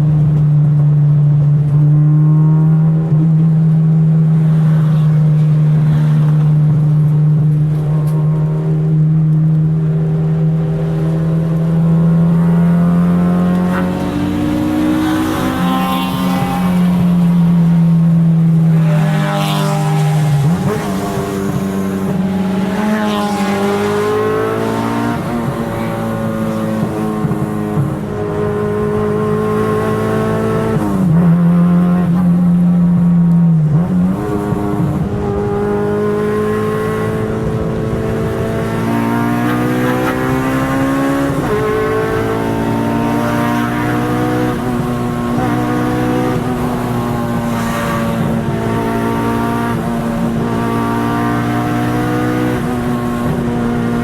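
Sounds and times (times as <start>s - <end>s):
car engine accelerating: 0.0s - 54.0s.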